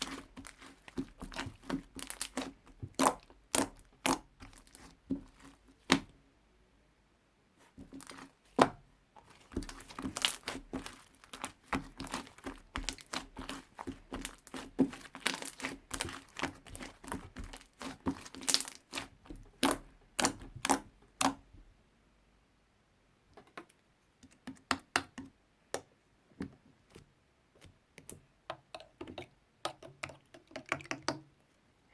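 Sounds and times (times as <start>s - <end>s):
slime squished by hand: 0.0s - 6.1s, 7.7s - 21.5s.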